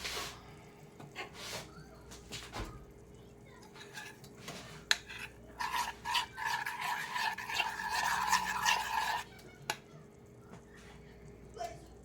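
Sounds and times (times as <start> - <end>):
utensil scraping in a pot: 0.0 - 0.4, 3.6 - 9.8.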